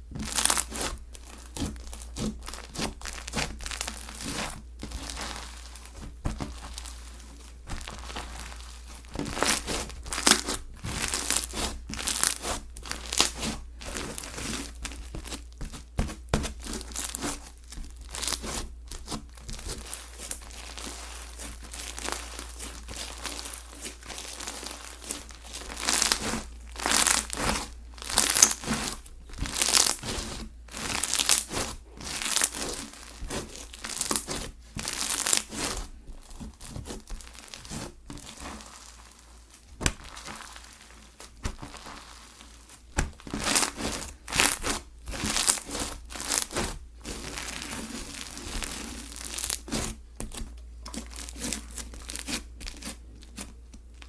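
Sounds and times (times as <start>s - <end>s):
slime squished by hand: 0.1s - 54.0s.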